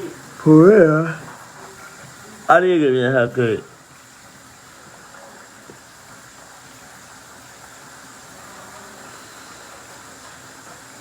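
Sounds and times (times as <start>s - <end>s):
steady background hiss: 0.0s - 11.0s.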